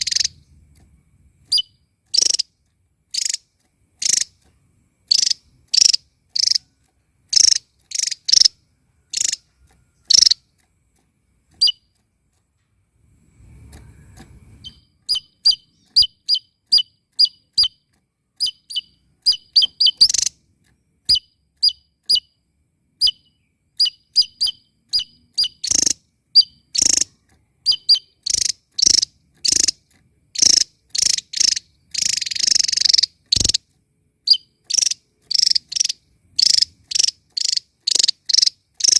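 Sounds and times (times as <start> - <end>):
songbird chirping: 0.0 - 38.9.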